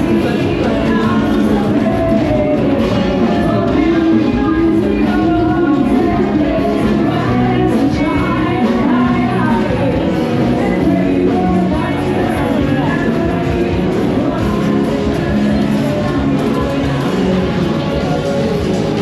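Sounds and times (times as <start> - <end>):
rock music with singing: 0.0 - 19.0.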